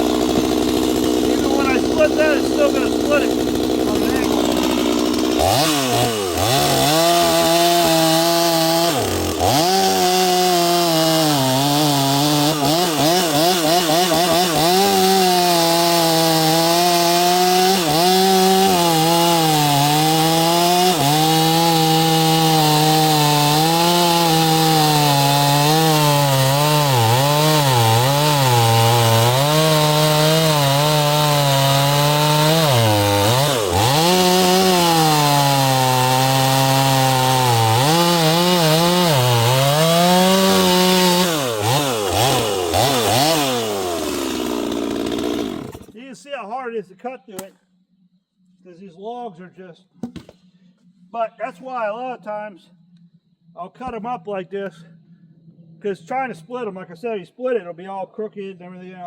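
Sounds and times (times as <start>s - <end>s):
chainsaw cutting log: 0.0s - 46.1s.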